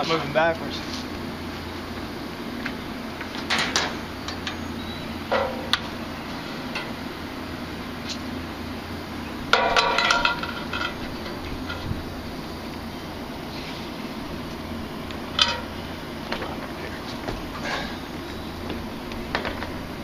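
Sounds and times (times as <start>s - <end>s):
steady low hum: 0.0s - 20.0s
metal clanking: 5.3s - 6.0s, 9.5s - 11.9s.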